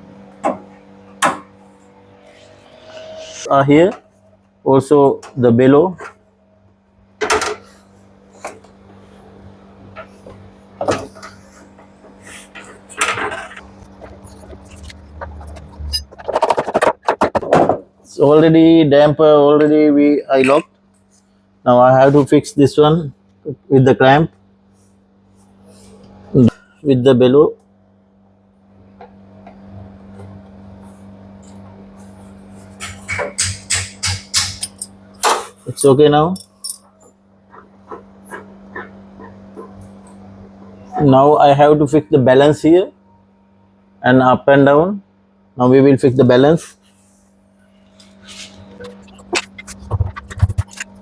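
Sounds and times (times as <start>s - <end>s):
steady low hum: 0.0s - 51.0s
knocks and clicks of parts fitted: 32.8s - 35.5s
metallic clinks and rattles: 34.4s - 35.0s, 36.4s - 37.1s.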